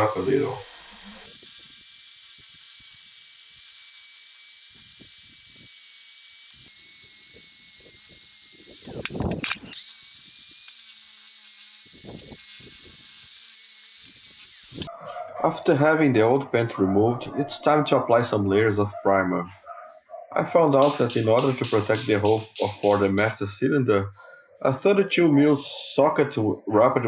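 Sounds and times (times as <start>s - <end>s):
paint stripping hiss: 7.4s - 27.0s.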